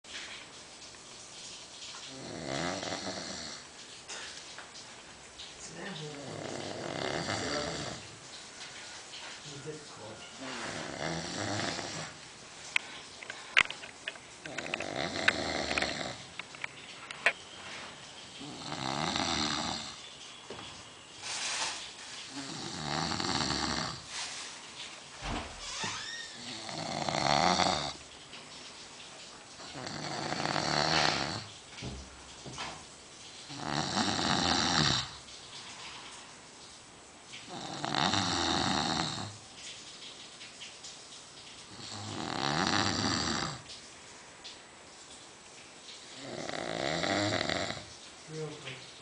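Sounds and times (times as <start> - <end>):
man snoring: 2.1 - 3.6, 6.2 - 8.0, 10.7 - 12.2, 14.5 - 16.2, 18.4 - 20.0, 22.3 - 24.0, 26.4 - 28.0, 29.7 - 31.5, 33.5 - 35.2, 37.5 - 39.3, 41.8 - 43.6, 46.2 - 47.8.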